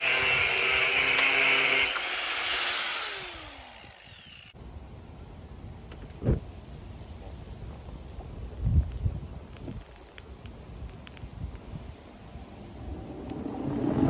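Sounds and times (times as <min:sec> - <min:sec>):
power tool spinning down: 0:00.0 - 0:04.6
short low thump: 0:06.2 - 0:06.4
low rumble: 0:12.4 - 0:14.0.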